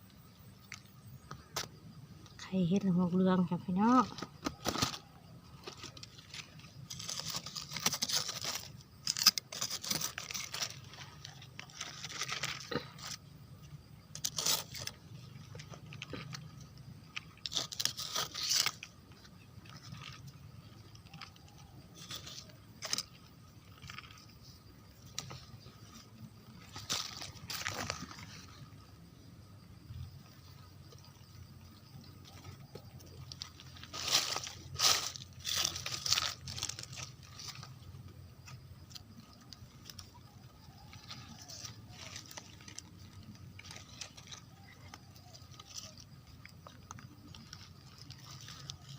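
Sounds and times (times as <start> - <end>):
crunching in dry leaf litter: 2.5 - 48.9.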